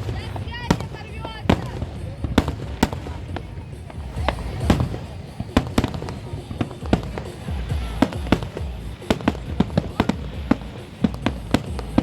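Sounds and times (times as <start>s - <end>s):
fireworks shells bursting: 0.0s - 12.0s
steady low rumble: 0.0s - 12.0s.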